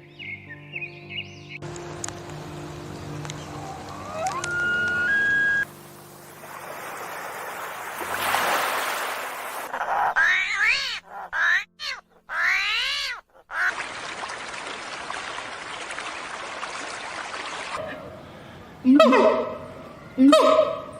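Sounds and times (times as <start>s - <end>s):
rising and falling hiss: 1.8s - 9.7s
whistle-like tone stepping up: 3.9s - 5.7s.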